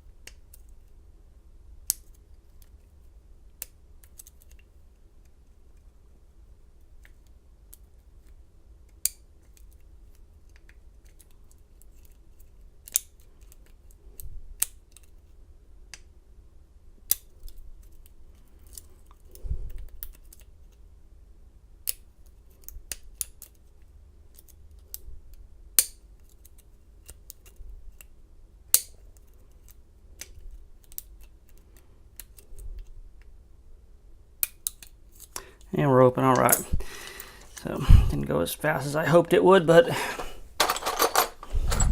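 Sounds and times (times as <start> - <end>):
lock pick clicking and scraping: 40.2 - 41.9.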